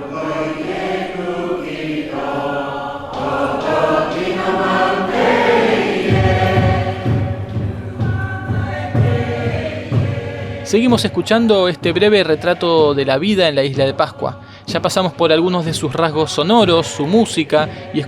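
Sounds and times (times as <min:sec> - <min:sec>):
choir singing: 0:00.0 - 0:18.0
low steady beat: 0:03.1 - 0:17.7.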